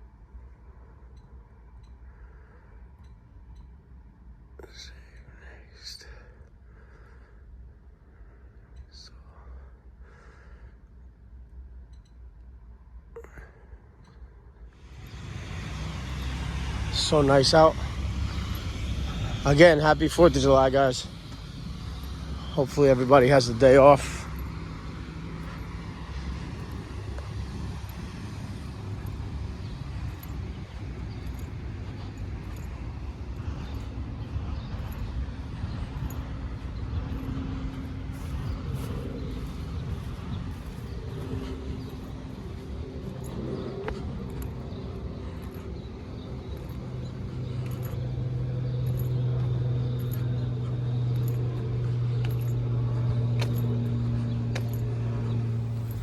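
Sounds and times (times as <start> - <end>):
compressor hum: 14.3 - 56.0
heat pump fan rush: 14.8 - 56.0.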